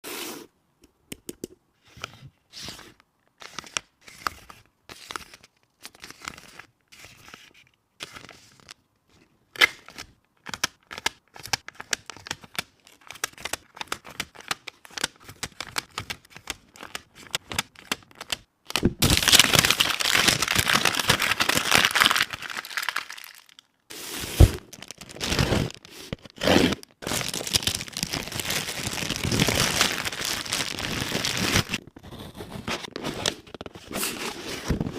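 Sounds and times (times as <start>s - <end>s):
loud crinkling and tearing: 19.0s - 23.6s, 24.6s - 31.8s.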